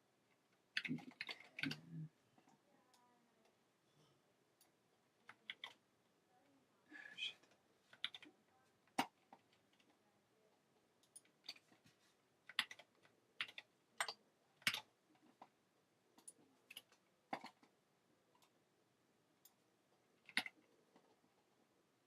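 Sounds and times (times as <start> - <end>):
keyboard typing: 0.3 - 2.5, 4.6 - 5.8, 7.9 - 8.3, 11.0 - 11.8, 12.4 - 15.6, 16.2 - 17.7, 20.2 - 21.2.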